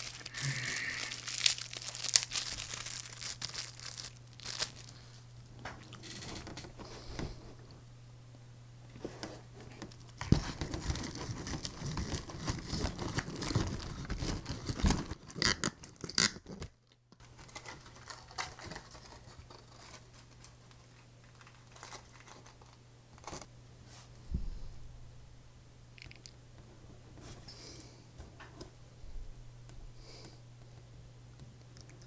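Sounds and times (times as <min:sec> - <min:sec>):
crunching fried food: 0:00.0 - 0:05.2
soft chewing clicks: 0:26.0 - 0:26.4, 0:30.6 - 0:32.0.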